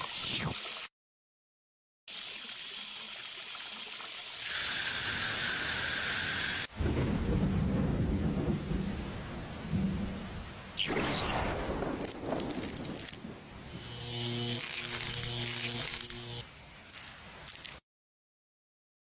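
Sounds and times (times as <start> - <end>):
rain: 4.4 - 13.6
rumbling thunder: 6.7 - 10.4, 11.2 - 13.5.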